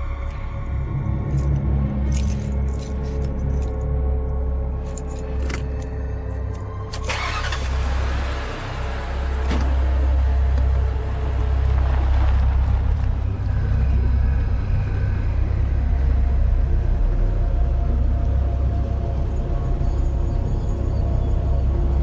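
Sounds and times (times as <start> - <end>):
car engine rumbling: 6.4 - 20.9.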